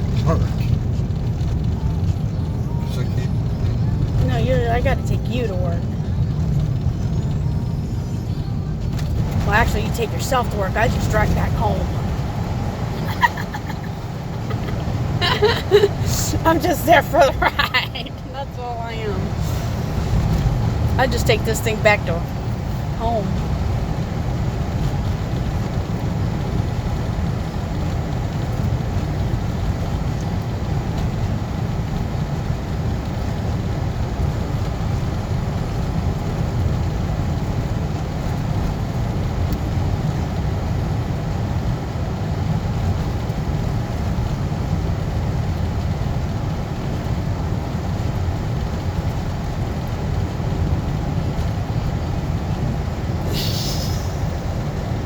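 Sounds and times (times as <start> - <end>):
road and tyre rumble in car: 0.0 - 55.0
short hiss: 53.2 - 54.4.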